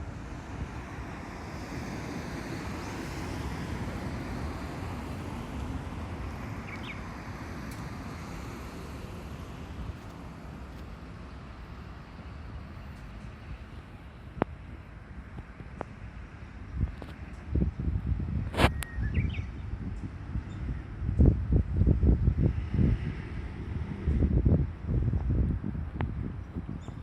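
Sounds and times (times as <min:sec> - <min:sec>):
car passing: 0:00.0 - 0:13.0, 0:22.3 - 0:25.0
wind on microphone: 0:16.6 - 0:27.0.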